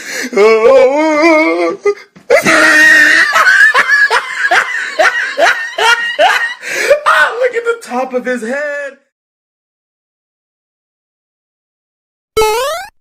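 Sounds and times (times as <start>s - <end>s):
laughter-like cries: 2.3s - 7.0s.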